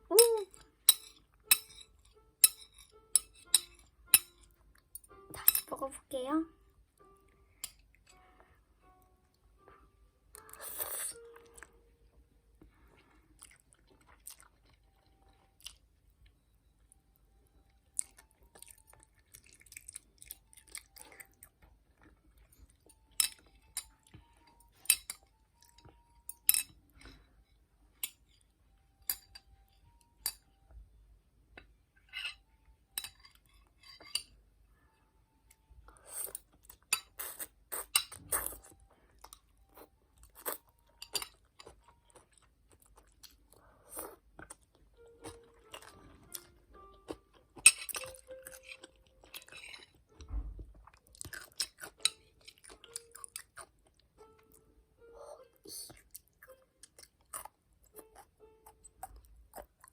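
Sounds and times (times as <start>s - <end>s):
cutlery clicking against dish: 0.9s - 4.4s, 26.3s - 26.8s
crunchy chewing: 13.0s - 15.8s, 17.8s - 24.2s, 35.9s - 50.0s, 50.8s - 54.0s.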